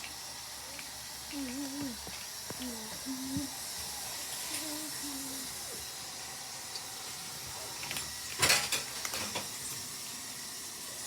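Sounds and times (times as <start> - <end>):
cat crunching food: 0.0 - 3.6.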